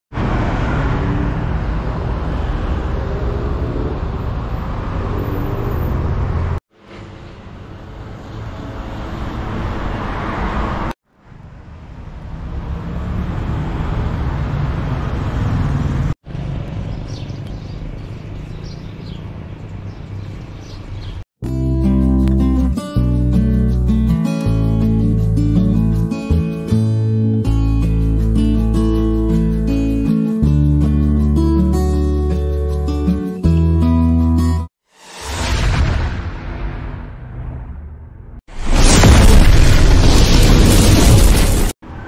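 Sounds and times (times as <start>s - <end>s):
vehicle engines passing: 0.1s - 21.2s.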